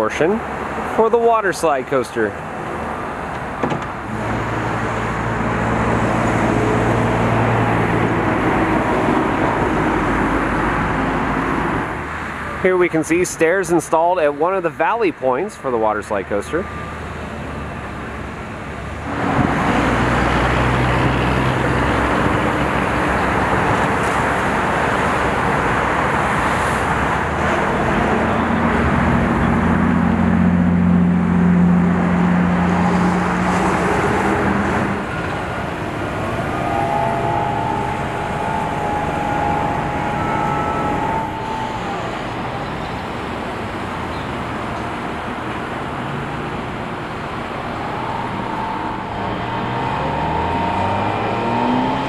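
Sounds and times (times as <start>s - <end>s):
vehicle engine drone: 0.0s - 14.4s, 16.2s - 52.0s
road traffic passing: 0.0s - 52.0s
high steady whine: 31.1s - 52.0s.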